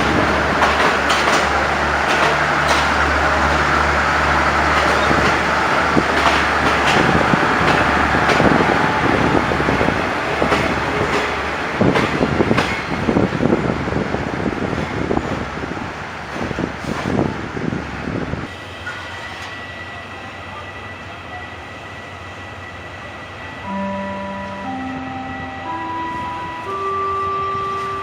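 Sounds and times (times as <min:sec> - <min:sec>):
locomotive engine drone: 0:00.0 - 0:12.4, 0:22.1 - 0:28.0
train wheels clacking over rail joints: 0:00.0 - 0:13.2.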